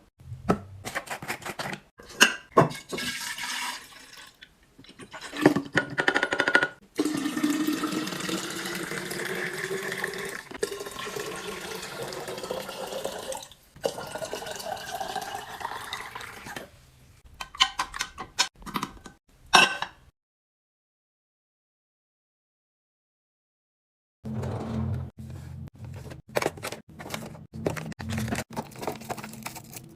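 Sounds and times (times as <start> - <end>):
liquid pouring into container: 2.8 - 4.5, 7.0 - 16.4.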